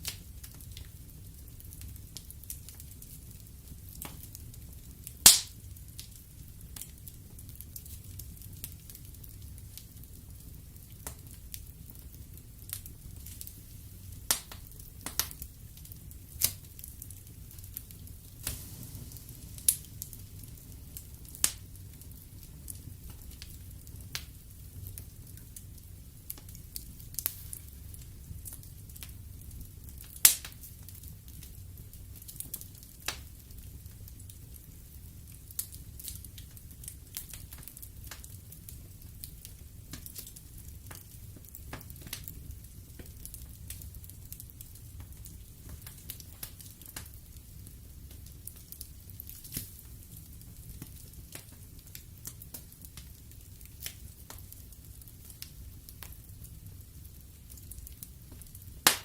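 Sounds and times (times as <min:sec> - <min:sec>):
fire crackling and popping: 0:00.0 - 0:59.0
low steady rumble: 0:15.5 - 0:26.2.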